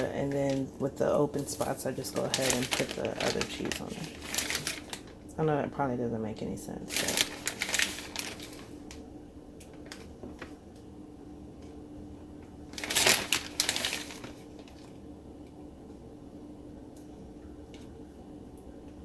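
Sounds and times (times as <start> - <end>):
plastic bag rustling: 0.0 - 5.6, 6.8 - 9.1, 9.7 - 10.6, 12.6 - 15.1
faint steady hum: 0.0 - 19.0.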